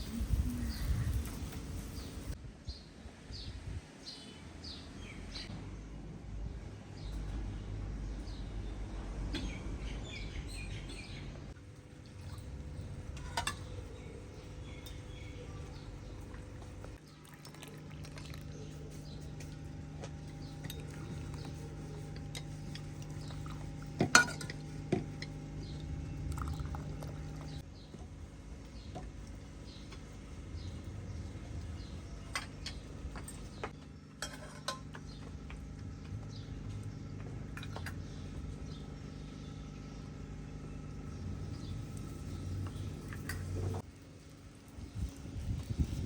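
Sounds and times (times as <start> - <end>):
steady low hum: 0.0 - 4.0, 5.2 - 46.0
metal utensils and dishes clinking: 24.0 - 24.6, 34.2 - 35.1.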